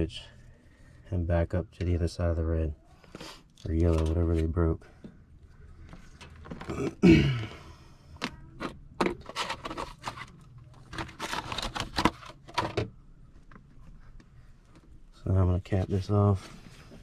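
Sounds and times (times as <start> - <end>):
person grunting: 6.7 - 7.6.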